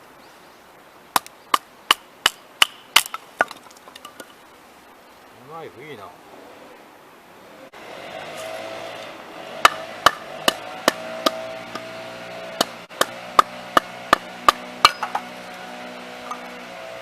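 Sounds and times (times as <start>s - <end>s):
wood struck with sharp whacks: 9.6s - 11.9s, 12.6s - 15.3s.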